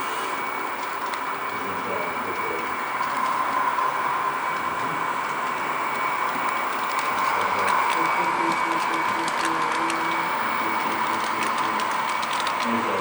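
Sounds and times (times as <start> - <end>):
model trains whirring hum: 0.0 - 13.0
faint clicks: 4.5 - 13.0.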